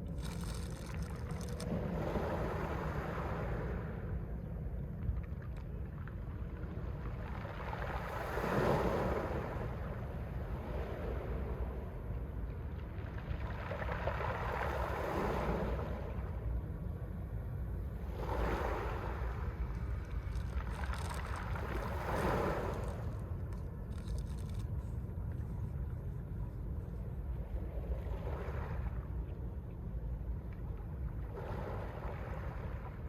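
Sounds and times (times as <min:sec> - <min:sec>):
steady low rumble: 0:00.0 - 0:08.2, 0:09.1 - 0:33.0
waves breaking on pebble shore: 0:07.6 - 0:09.6, 0:20.2 - 0:23.3.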